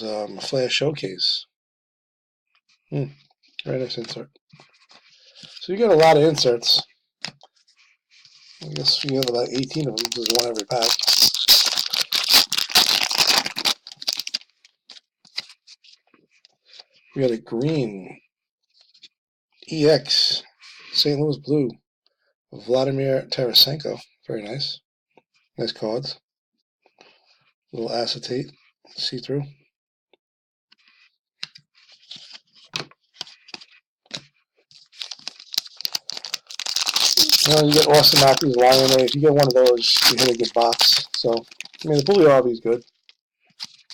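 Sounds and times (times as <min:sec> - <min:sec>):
cards rustling and ticking: 0:04.7 - 0:07.4, 0:08.4 - 0:15.6, 0:30.8 - 0:43.9
card pack wrapper tearing: 0:08.6 - 0:14.5, 0:34.9 - 0:42.4.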